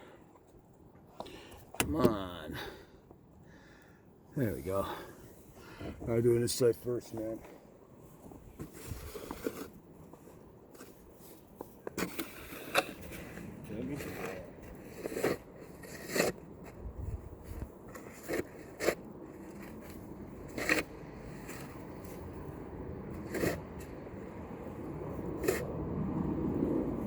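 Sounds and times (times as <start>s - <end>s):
snow shovel scraping snow: 8.6s - 9.8s, 12.0s - 16.8s, 17.4s - 22.3s, 23.1s - 24.1s, 25.2s - 25.8s.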